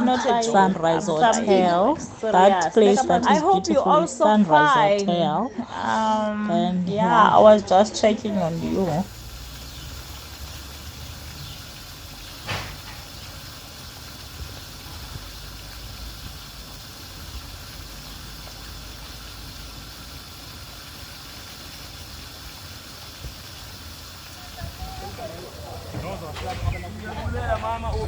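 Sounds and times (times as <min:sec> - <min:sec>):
boiling water and steam hiss: 0:08.2 - 0:28.0.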